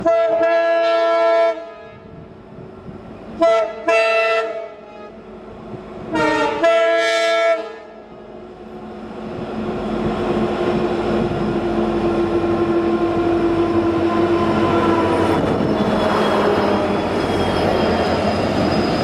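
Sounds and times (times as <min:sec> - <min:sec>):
locomotive air horn: 0:00.0 - 0:02.2, 0:03.4 - 0:05.2, 0:06.1 - 0:08.0
train running noise: 0:00.0 - 0:19.0.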